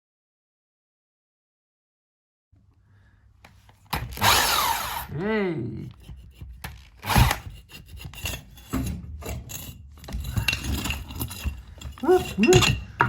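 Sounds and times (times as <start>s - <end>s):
trowel scraping mortar: 5.8s - 13.0s.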